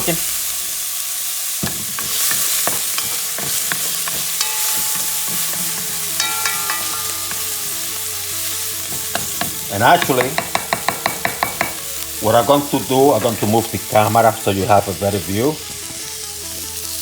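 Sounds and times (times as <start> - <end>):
vegetables sizzling in oil: 0.0 - 17.0
utensil scraping a pot: 1.6 - 14.3.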